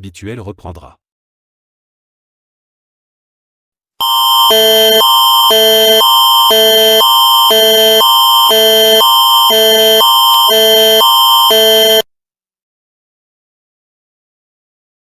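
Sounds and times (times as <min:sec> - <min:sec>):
steady high tone: 0:04.0 - 0:12.0
electronic alarm alternating chords: 0:04.0 - 0:12.1.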